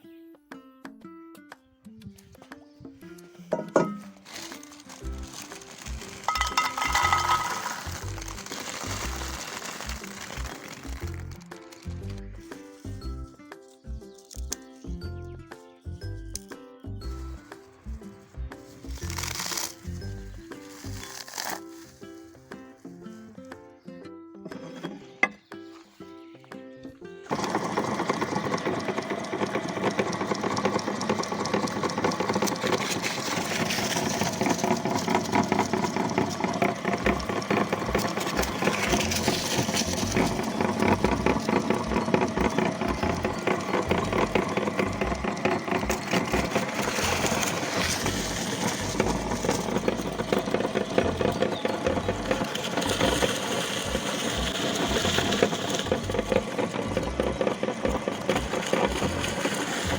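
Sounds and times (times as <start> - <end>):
sticks being crushed crackle: 3.4 - 14.9, 16.2 - 23.6, 31.8 - 51.2
electric grinder motor hum: 4.3 - 12.3, 27.3 - 59.9.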